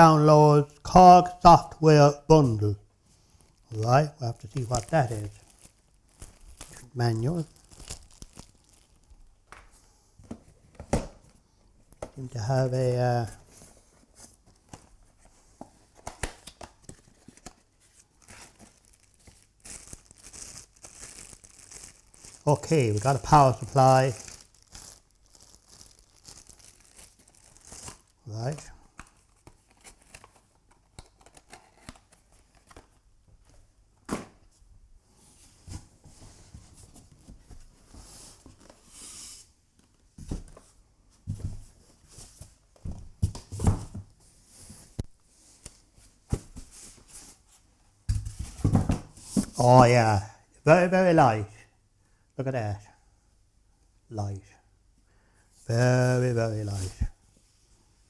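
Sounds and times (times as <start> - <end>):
packaging rustling and sliding: 4.4 - 9.1, 13.4 - 33.0.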